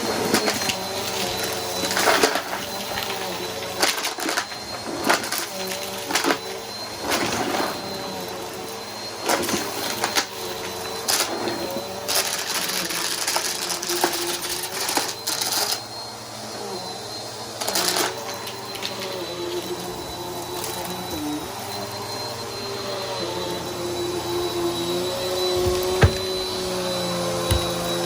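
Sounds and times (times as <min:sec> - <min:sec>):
upright vacuum running: 0:15.8 - 0:28.0
debris rattling in vacuum: 0:25.4 - 0:26.8.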